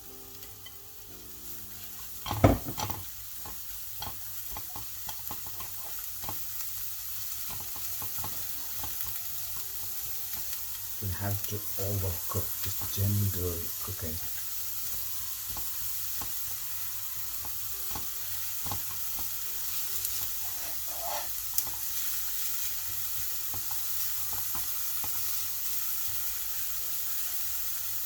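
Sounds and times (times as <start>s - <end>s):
vegetables sizzling in a pan: 0.0s - 28.0s
utensil clicking against pan: 2.2s - 9.7s, 17.3s - 19.4s, 21.1s - 21.9s, 22.8s - 25.4s.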